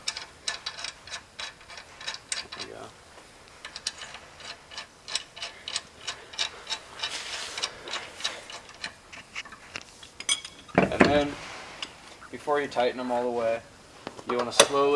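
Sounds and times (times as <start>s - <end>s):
ratchet wrench clicking: 0.0s - 2.7s, 3.6s - 9.0s.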